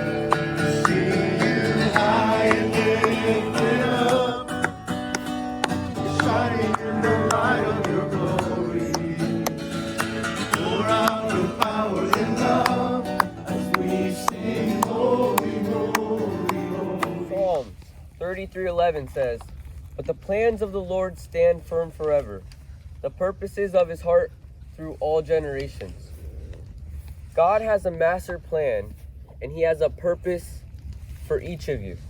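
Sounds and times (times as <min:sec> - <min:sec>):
person singing: 0:00.0 - 0:17.6
plucked acoustic guitar: 0:00.0 - 0:17.7.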